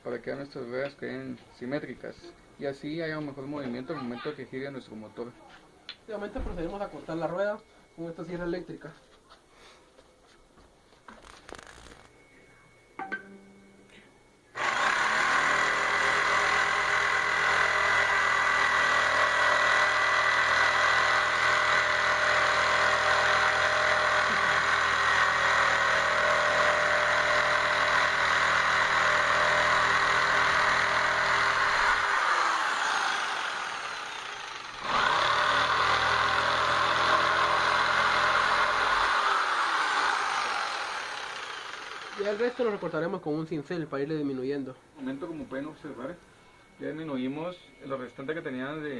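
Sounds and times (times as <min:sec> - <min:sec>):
electric saw cutting wood: 0:14.6 - 0:43.1.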